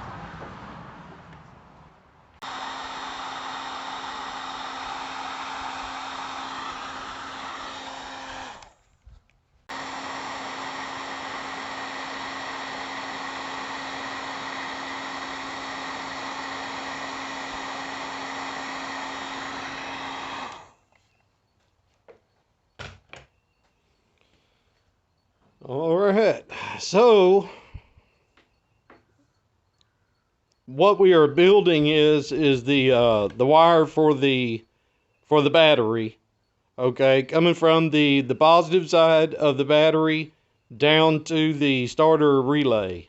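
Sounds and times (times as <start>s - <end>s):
heat gun blowing: 2.4s - 9.0s, 9.6s - 21.3s, 31.4s - 33.6s.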